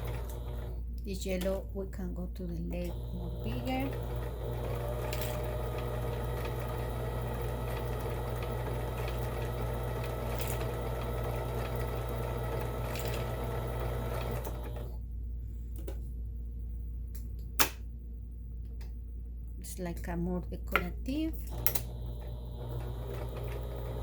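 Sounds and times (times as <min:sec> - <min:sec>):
sewing machine running: 0:00.0 - 0:00.8, 0:02.8 - 0:15.0, 0:21.5 - 0:24.0.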